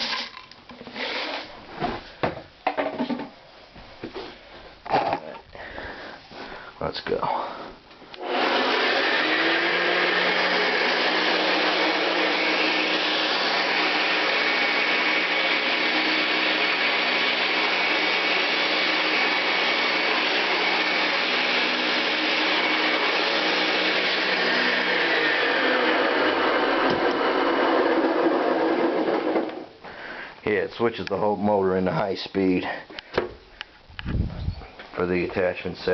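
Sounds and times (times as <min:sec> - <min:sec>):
vacuum cleaner running: 0:08.2 - 0:29.7.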